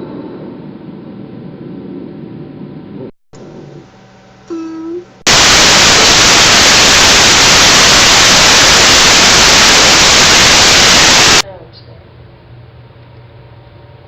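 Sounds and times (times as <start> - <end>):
loud static hiss: 5.2 - 11.4.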